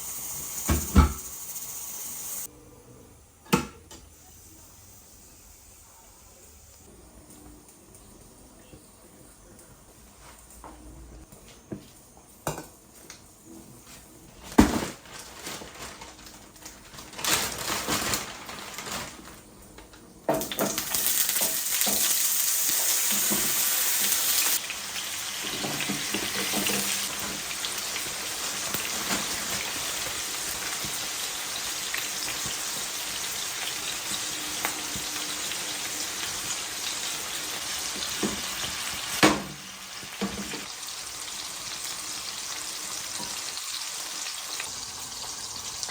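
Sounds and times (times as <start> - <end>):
food sizzling in hot oil: 0.0 - 2.5, 20.3 - 45.9
utensils and pans clinking: 19.8 - 24.6, 25.4 - 28.0.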